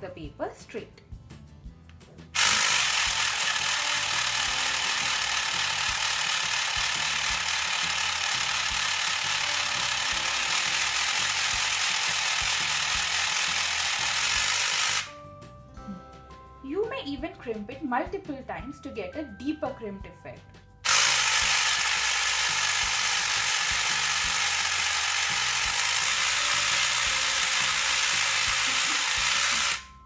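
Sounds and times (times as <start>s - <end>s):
motor driving gears: 2.0s - 15.2s, 20.8s - 30.0s.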